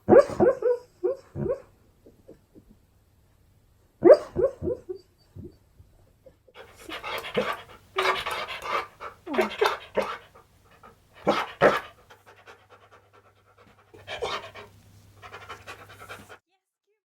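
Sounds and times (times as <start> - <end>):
dog panting: 6.6 - 16.4.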